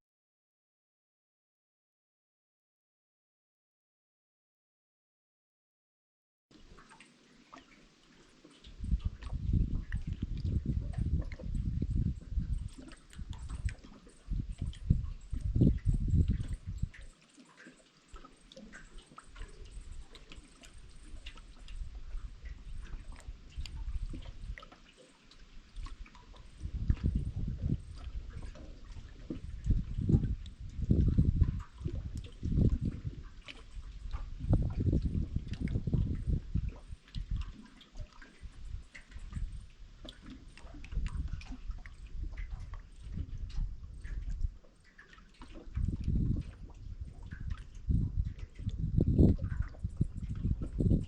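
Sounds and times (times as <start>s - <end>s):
water dripping and lapping: 6.5s - 51.0s
low uneven rumble: 8.7s - 17.1s, 25.6s - 37.4s, 45.6s - 51.0s.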